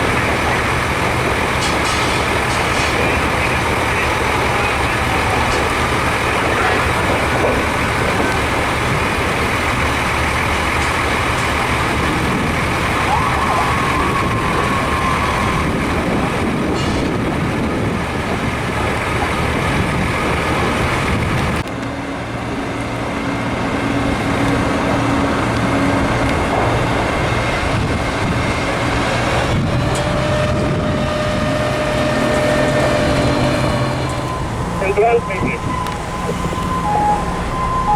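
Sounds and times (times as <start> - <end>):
fire engines rumbling: 0.0 - 37.9
siren wavering: 13.0 - 15.9, 30.2 - 37.9
steady tones: 31.0 - 37.9.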